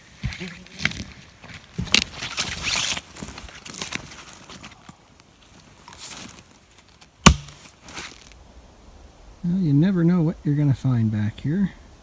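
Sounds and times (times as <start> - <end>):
footsteps crunching through twigs: 0.0 - 8.4.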